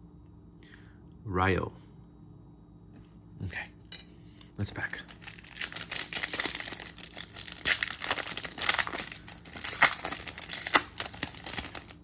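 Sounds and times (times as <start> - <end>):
wrapper tearing and crinkling: 4.8 - 12.0.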